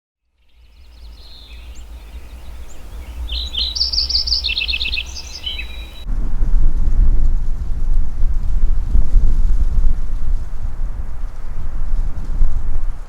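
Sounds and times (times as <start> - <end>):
small birds singing: 0.3 - 6.1
wind rumble on microphone: 0.4 - 13.0.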